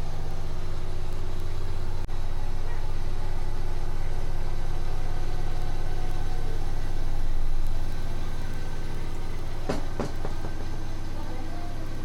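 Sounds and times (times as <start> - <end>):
low machine hum: 0.0 - 12.0
sharp knocks: 9.6 - 10.7.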